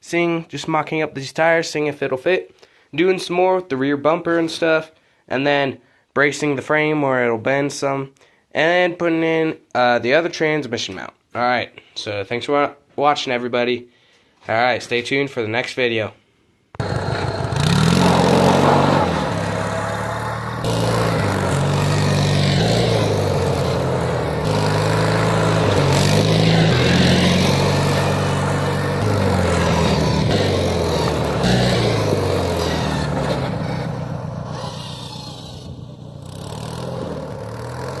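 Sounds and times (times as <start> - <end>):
lawn tractor engine running: 16.8 - 38.0.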